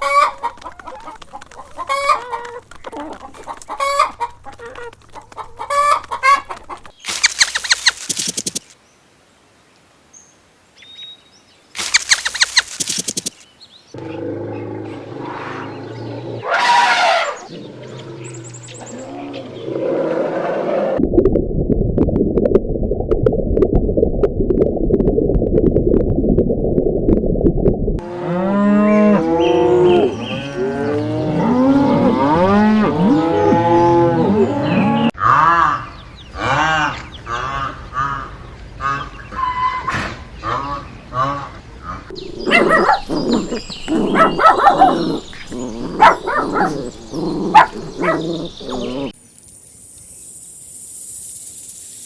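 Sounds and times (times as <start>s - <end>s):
cattle mooing: 28.0s - 35.8s, 42.4s - 49.1s.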